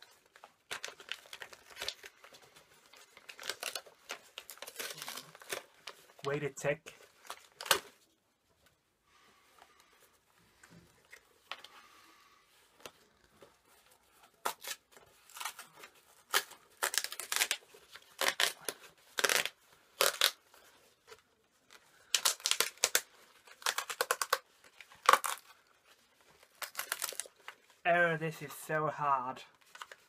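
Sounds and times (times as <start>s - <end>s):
packaging being ripped: 0.7s - 2.2s, 2.9s - 6.1s, 7.2s - 8.0s, 14.4s - 20.4s, 22.0s - 25.5s, 26.4s - 27.5s.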